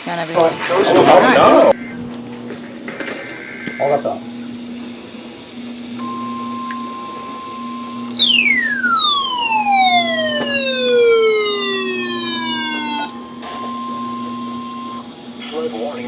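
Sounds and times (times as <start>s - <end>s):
faint radio alert tone: 8.1s - 13.2s
whistle tone sliding down: 8.1s - 13.2s.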